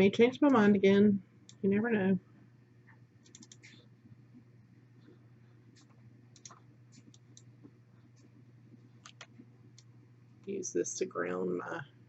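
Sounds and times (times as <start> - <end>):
faint steady hum: 0.0 - 12.0
computer mouse clicks: 3.2 - 3.9, 5.8 - 7.5, 9.0 - 9.9.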